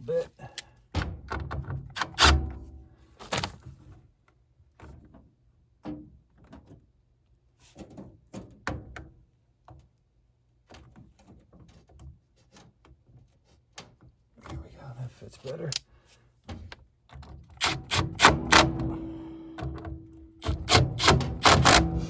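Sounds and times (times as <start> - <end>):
hand tool tapping metal parts: 17.6 - 22.0.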